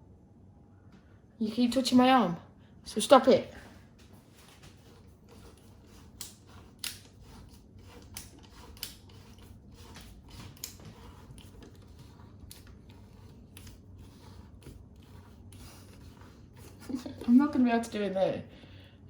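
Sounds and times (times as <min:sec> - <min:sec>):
rubbing and scraping: 0:04.1 - 0:18.1.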